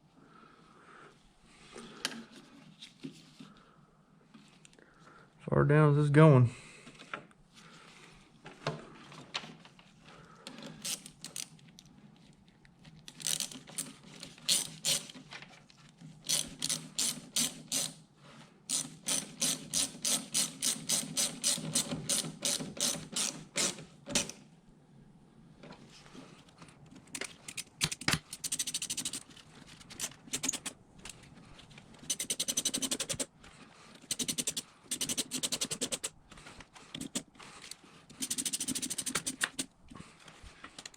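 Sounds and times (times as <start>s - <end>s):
ratchet wrench clicking: 13.2s - 13.9s, 14.5s - 15.1s, 16.2s - 18.0s, 18.7s - 24.3s, 27.5s - 29.2s, 30.0s - 30.8s, 32.0s - 33.3s, 34.0s - 36.1s, 38.2s - 39.7s.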